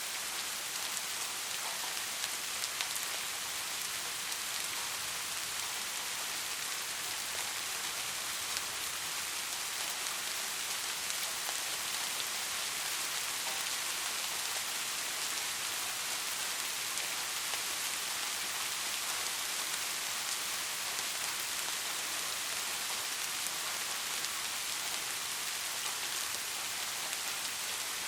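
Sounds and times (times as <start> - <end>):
steady rainfall hiss: 0.0 - 28.0.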